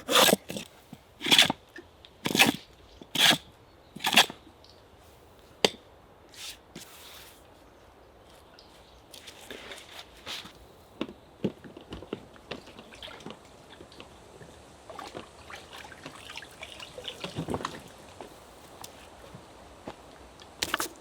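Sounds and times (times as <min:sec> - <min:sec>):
water splashing and dripping: 0:14.9 - 0:18.2.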